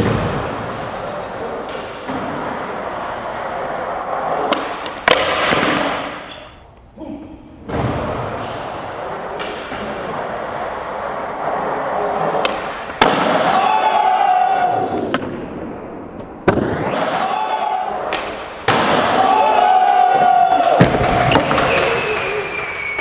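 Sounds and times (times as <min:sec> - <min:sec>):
skateboard wheels rolling on pavement: 0:00.0 - 0:06.3, 0:07.6 - 0:17.0, 0:17.6 - 0:23.0
skateboard clacking on ground: 0:19.9 - 0:23.0.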